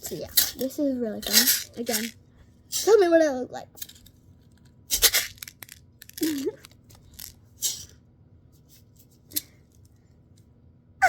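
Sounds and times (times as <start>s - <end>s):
plastic toy rustle: 0.0s - 2.2s, 3.8s - 7.9s.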